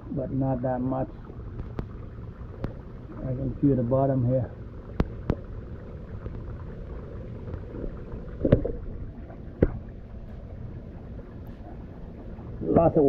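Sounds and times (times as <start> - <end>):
water splashes: 0.0 - 13.0.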